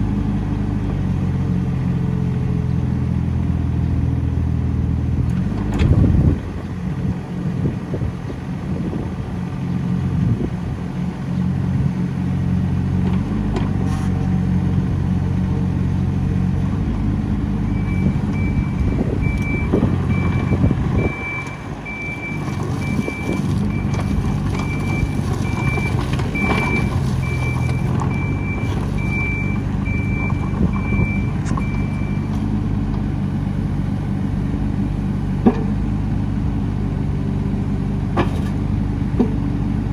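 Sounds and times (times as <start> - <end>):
excavator diesel engine running: 0.0 - 39.9
high-pitched warning alarm beeps: 17.7 - 24.0, 24.7 - 32.4.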